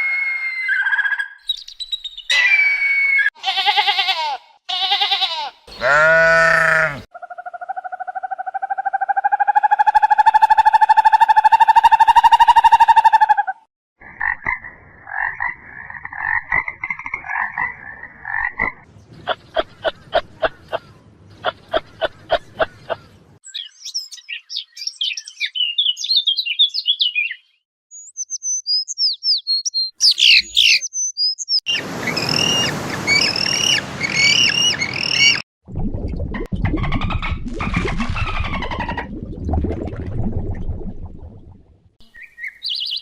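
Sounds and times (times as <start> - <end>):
high bird chirps: 0.5 - 3.3, 21.4 - 35.4, 42.0 - 43.0.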